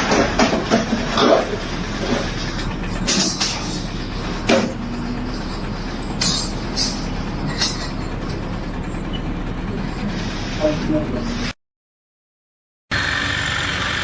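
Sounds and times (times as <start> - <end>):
engine rumble and hum: 0.0 - 11.6, 12.9 - 14.0
sharp metal clanks: 6.2 - 8.1.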